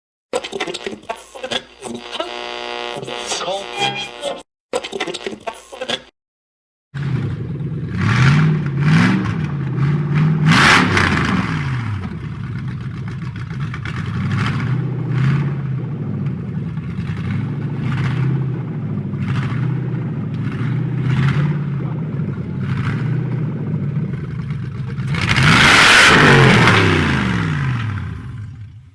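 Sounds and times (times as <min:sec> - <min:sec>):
car engine revving: 0:07.0 - 0:28.9.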